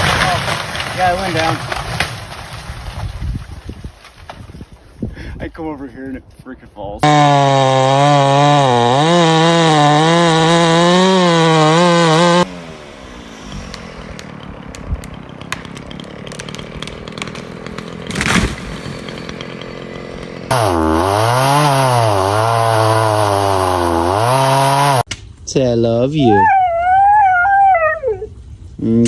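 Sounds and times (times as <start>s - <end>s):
chainsaw revving: 7.0s - 25.1s.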